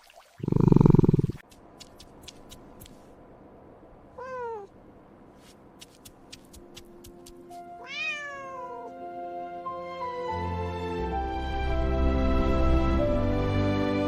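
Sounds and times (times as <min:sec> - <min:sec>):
cat meowing: 0:04.2 - 0:04.8, 0:07.8 - 0:09.0
soft background music: 0:06.5 - 0:14.0.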